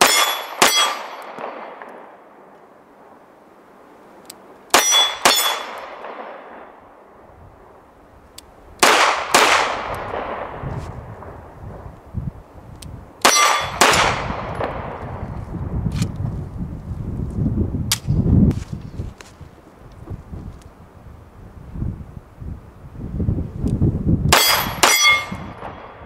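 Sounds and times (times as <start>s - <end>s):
metallic clang of steel target: 0.0s - 1.5s, 4.7s - 5.9s, 13.2s - 14.0s, 24.3s - 25.8s
pistol shots: 0.0s - 2.1s, 4.7s - 6.8s, 8.8s - 10.6s, 13.2s - 15.0s, 24.3s - 26.0s.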